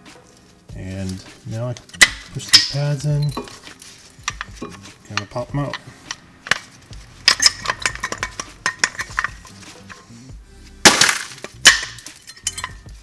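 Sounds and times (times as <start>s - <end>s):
small metal clinks: 1.8s - 10.1s, 11.6s - 13.0s
loud metal clanks ringing: 7.3s - 9.5s.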